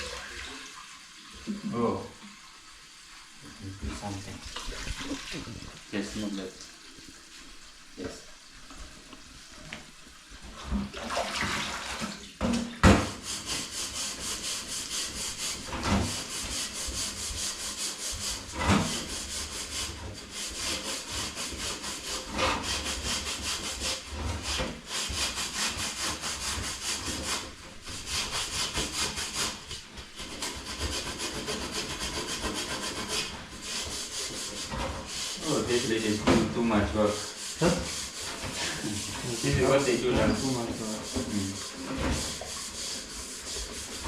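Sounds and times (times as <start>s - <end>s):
quick scraping strokes: 13.1s - 44.0s.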